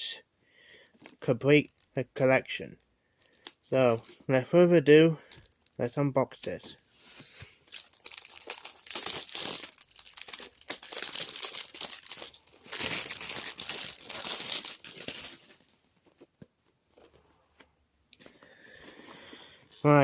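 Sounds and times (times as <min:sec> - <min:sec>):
packaging crinkling and tearing: 0:00.8 - 0:02.0, 0:03.2 - 0:04.2, 0:07.6 - 0:17.1.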